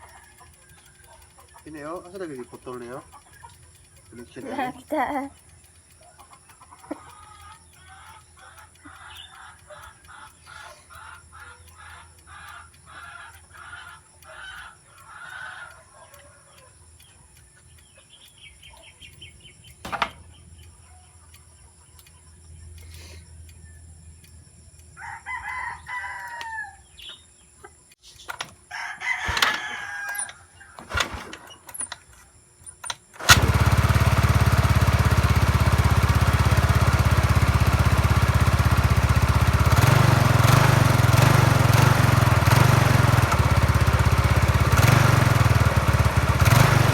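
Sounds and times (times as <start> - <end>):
rooster crowing: 0.0 - 1.2, 6.8 - 16.5, 25.0 - 27.0, 28.6 - 31.1
scooter engine running: 0.0 - 10.4, 33.1 - 46.9
chickens clucking: 0.0 - 23.2, 25.4 - 33.4.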